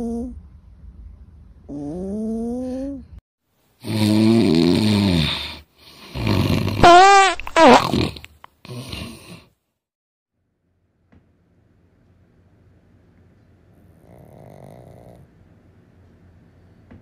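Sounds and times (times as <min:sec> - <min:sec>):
loud rasping snoring: 0:03.8 - 0:06.8, 0:07.8 - 0:09.5, 0:14.0 - 0:15.3.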